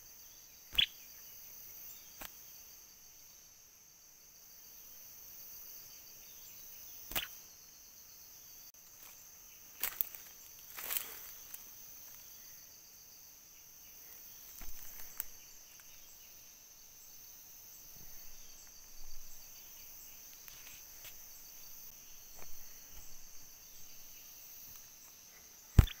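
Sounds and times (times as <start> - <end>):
high-pitched insect chorus: 0.0 - 26.0
soft rustles and knocks: 14.5 - 15.3.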